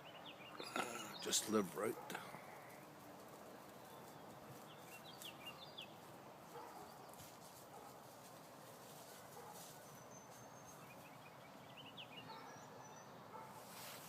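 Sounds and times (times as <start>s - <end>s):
faint bird chirps: 9.8s - 13.4s.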